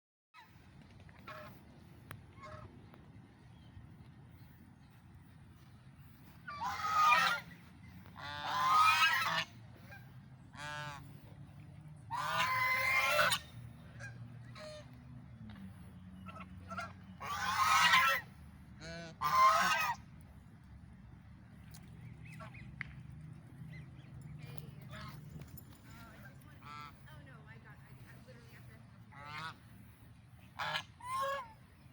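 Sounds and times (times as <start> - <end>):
waterfowl honking: 6.4 - 11.2, 12.1 - 14.9, 16.3 - 20.1, 26.6 - 27.0, 29.1 - 31.8.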